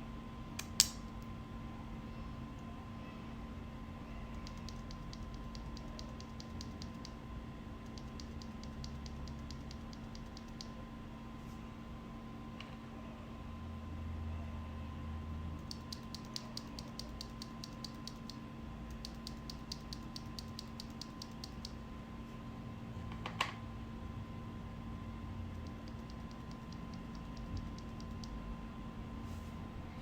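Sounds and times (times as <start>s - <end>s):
faint steady hum: 0.0s - 30.0s
mechanical keyboard typing: 4.3s - 7.2s, 7.8s - 10.7s, 15.6s - 21.8s, 25.5s - 28.4s.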